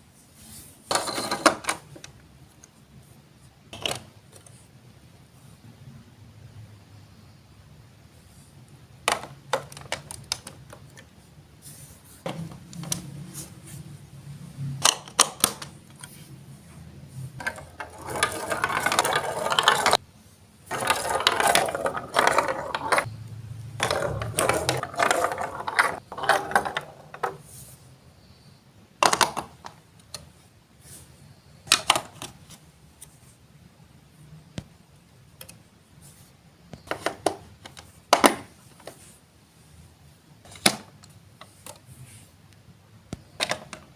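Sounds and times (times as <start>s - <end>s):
marbles rolling on plastic track: 17.4s - 20.0s, 20.7s - 23.1s, 23.7s - 27.4s.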